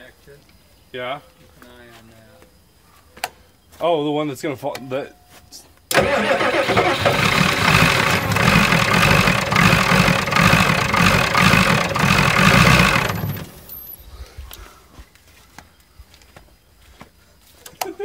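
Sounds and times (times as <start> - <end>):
starter cranking diesel engine: 5.9 - 14.0.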